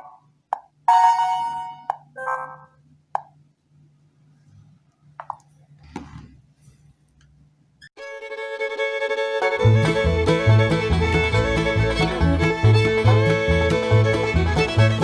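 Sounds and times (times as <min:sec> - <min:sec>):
low bass notes: 0:09.5 - 0:15.0.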